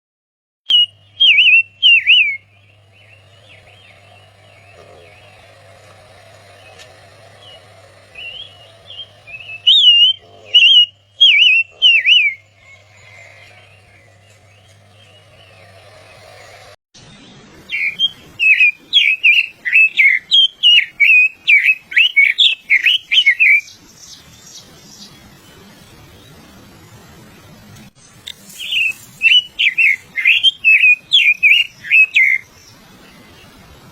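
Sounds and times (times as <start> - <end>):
small bird singing whistled notes: 0.7 - 3.9, 28.3 - 32.5
faint steady hum: 0.7 - 16.8
songbird warbling: 0.7 - 16.8, 17.7 - 23.8, 28.3 - 32.5.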